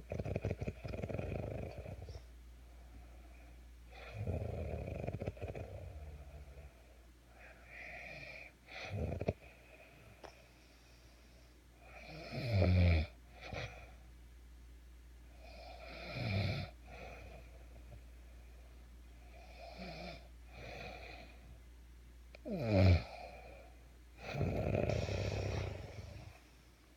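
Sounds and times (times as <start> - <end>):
loud buzzing snores: 0.1 - 2.2, 3.9 - 6.6, 8.1 - 9.4, 11.9 - 13.8, 15.5 - 16.7, 22.5 - 23.2, 24.2 - 26.4
soft breaths: 1.6 - 4.3, 5.6 - 12.3, 16.7 - 21.7, 22.4 - 26.9.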